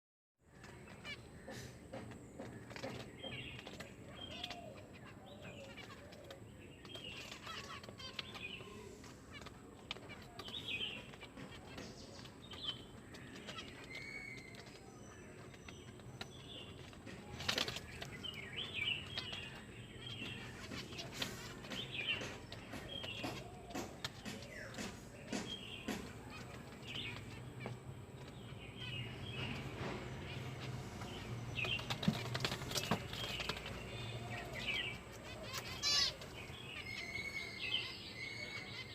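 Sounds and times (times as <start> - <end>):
clicks and knocks of movement: 31.0 - 36.5.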